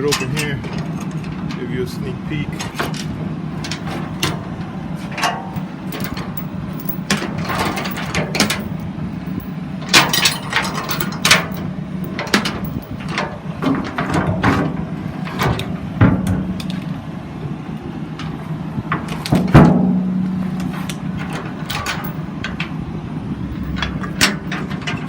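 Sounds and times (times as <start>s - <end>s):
steady low hum: 3.4s - 14.0s, 19.8s - 25.0s
metal latch knocking and clanking: 3.6s - 4.6s, 5.2s - 16.7s, 21.2s - 22.8s, 23.4s - 25.0s.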